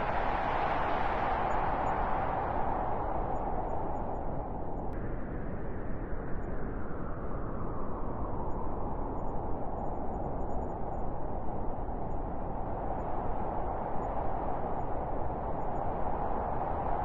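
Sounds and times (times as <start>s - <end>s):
wind blowing: 0.0s - 17.0s.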